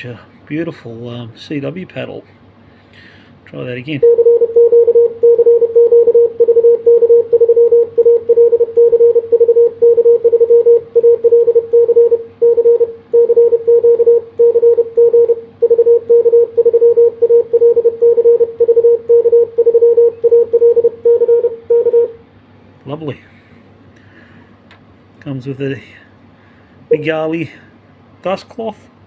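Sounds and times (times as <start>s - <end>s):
morse code beeps: 4.0s - 22.2s.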